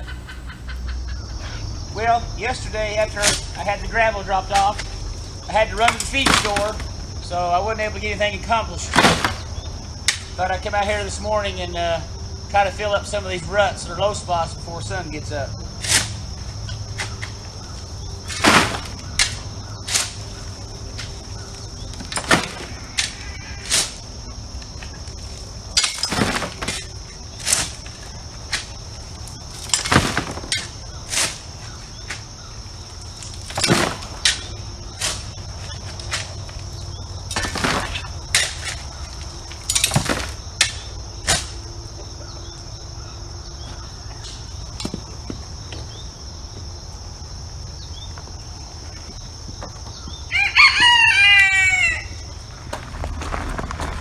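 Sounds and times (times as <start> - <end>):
insect chirring: 0.0 - 54.0
hand tool scraping gravel: 2.8 - 7.8, 15.8 - 41.6, 52.2 - 54.0.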